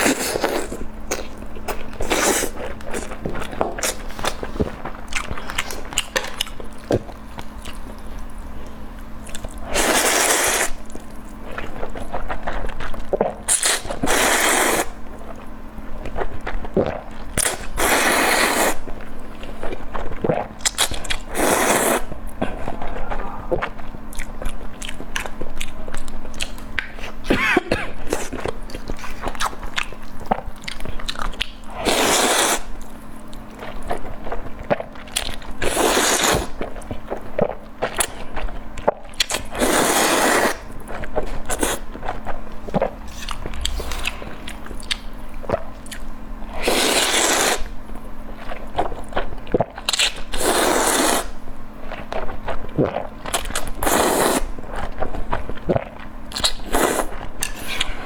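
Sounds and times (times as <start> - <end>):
person chewing: 0.0 - 15.4, 16.0 - 27.2, 27.8 - 47.8
crunching bites: 42.6 - 45.2.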